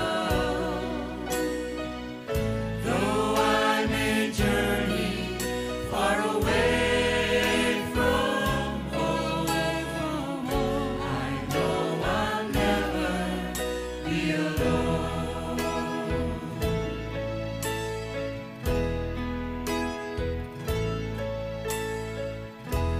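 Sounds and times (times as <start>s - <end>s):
gospel choir singing: 0.0s - 18.4s
sustained bass notes: 0.0s - 22.9s.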